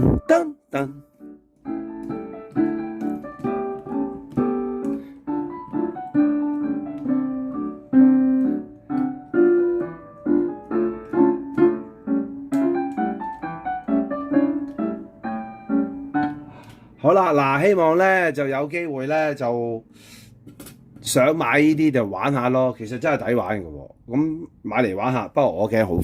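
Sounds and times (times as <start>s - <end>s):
digital piano melody: 0.0s - 19.9s.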